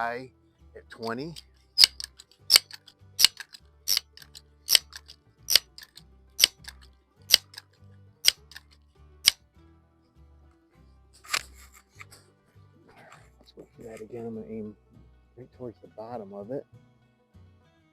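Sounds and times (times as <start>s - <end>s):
air rifle pump lever clicking: 0.9s - 7.6s, 8.2s - 8.7s.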